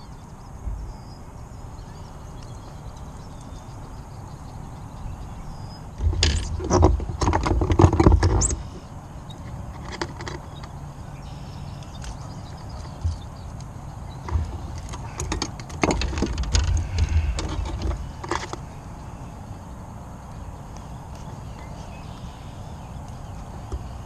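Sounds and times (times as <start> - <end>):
low rumble of wind or water: 0.0 - 24.0
knocks and thumps in kayak: 6.0 - 8.6, 14.2 - 18.5.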